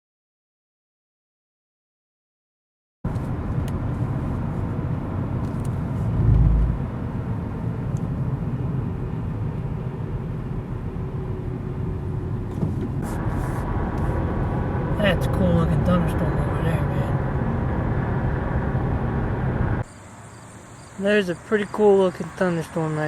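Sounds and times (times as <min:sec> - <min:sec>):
low outdoor rumble: 0:03.1 - 0:19.9.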